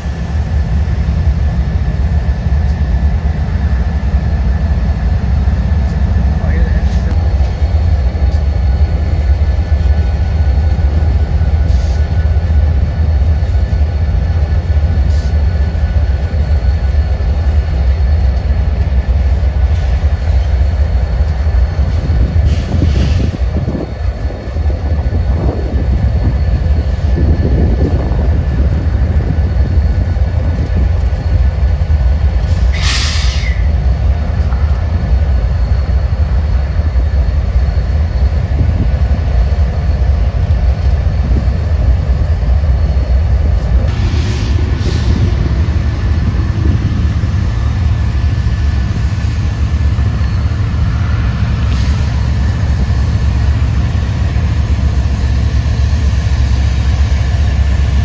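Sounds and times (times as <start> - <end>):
train rumbling: 0.0 - 58.0
brief hiss: 32.5 - 33.7.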